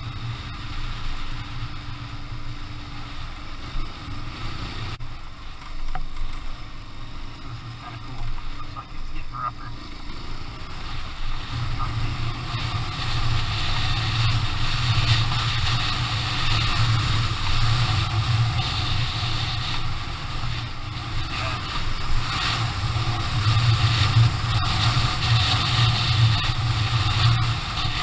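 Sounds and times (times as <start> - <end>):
motorcycle engine running: 0.0 - 28.0
wind on microphone: 10.6 - 28.0.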